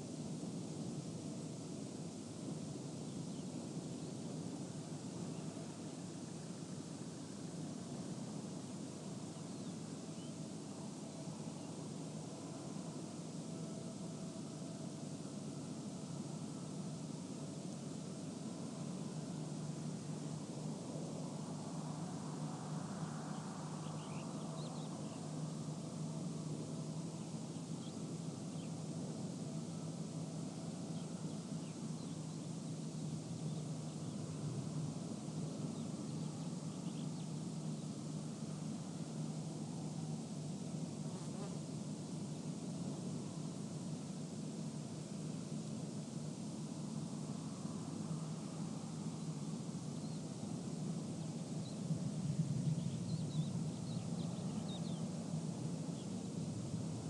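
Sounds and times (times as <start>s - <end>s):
desert wind: 0.0s - 57.0s
distant machinery hum: 0.0s - 57.0s
faint bird chirps: 3.0s - 4.6s, 7.6s - 17.6s, 18.2s - 38.8s, 48.1s - 51.9s, 52.6s - 55.2s.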